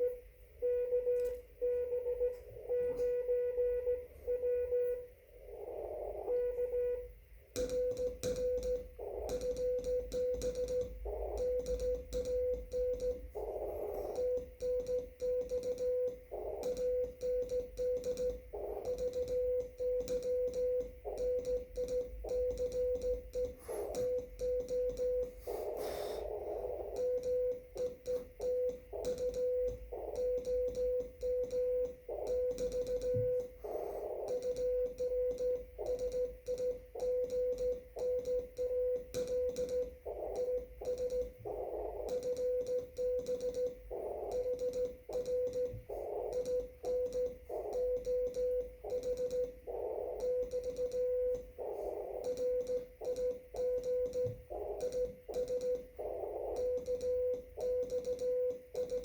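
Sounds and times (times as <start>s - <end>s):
morse code tone: 0.0s - 59.0s
radio band noise hiss: 25.4s - 26.6s.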